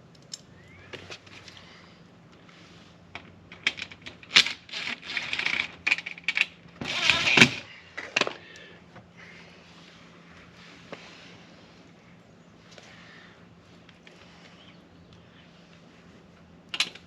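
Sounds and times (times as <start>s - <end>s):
metal hardware clicking and rattling: 3.1s - 8.4s, 16.7s - 17.0s.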